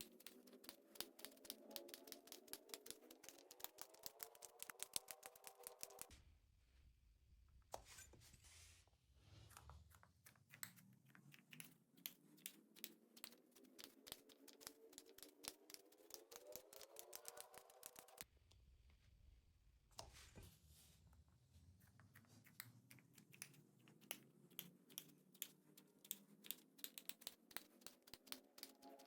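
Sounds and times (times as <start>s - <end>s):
slime clicking and popping: 0.0s - 6.1s.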